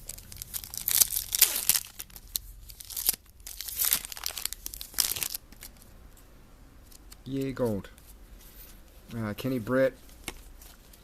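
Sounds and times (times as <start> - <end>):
card pack wrapper tearing: 0.0 - 5.8.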